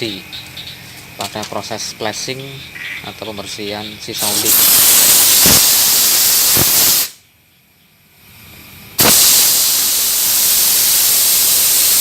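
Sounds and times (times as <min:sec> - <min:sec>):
compressed air hissing: 0:04.1 - 0:07.2, 0:09.0 - 0:12.0.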